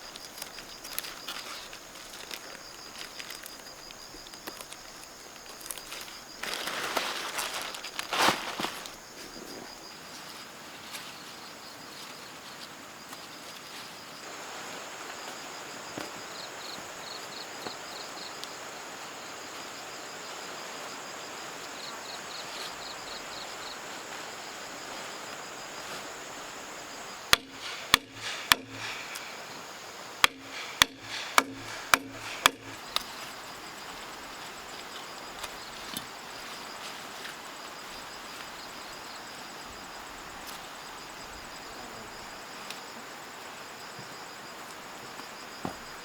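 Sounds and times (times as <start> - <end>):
insect chirps: 0.0 - 46.0
chopping blows on wood: 27.3 - 29.3, 30.2 - 33.1.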